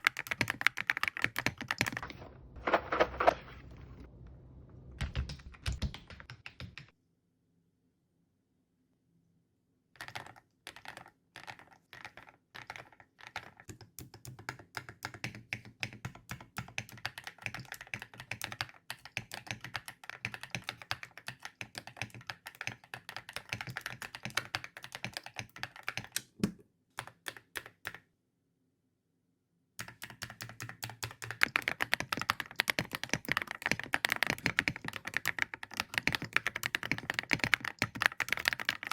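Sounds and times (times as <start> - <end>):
typing on mechanical keyboard: 0.0 - 2.1, 5.0 - 7.0, 10.0 - 26.4, 27.0 - 28.0, 29.8 - 38.9.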